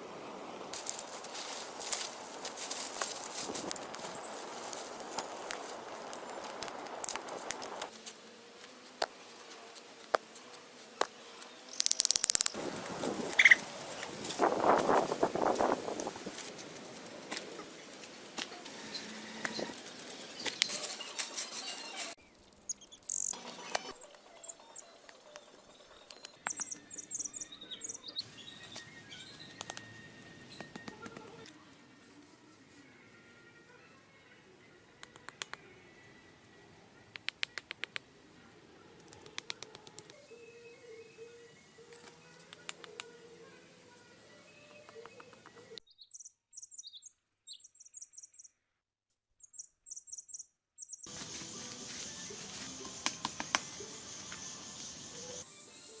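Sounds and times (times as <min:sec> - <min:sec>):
small birds chirping: 0:10.0 - 0:16.6, 0:17.5 - 0:31.6, 0:32.8 - 0:48.6, 0:49.4 - 0:55.5.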